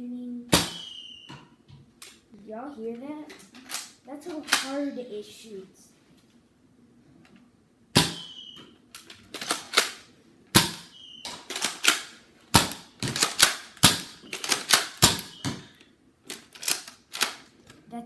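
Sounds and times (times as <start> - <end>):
toy blaster shot snapping: 0.5 - 1.0, 3.7 - 4.8, 8.0 - 10.0, 10.6 - 15.6, 16.3 - 17.5
brief whistle: 0.7 - 1.4, 8.2 - 8.7, 15.3 - 15.6.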